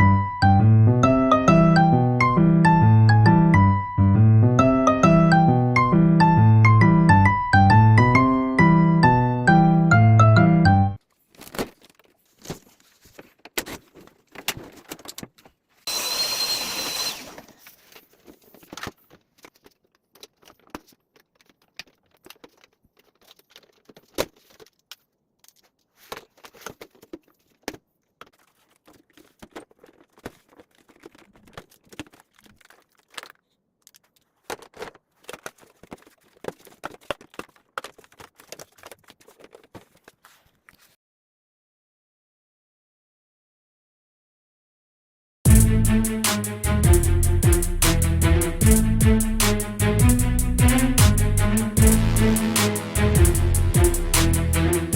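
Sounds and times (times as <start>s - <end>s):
power tool whirring: 15.9s - 17.5s.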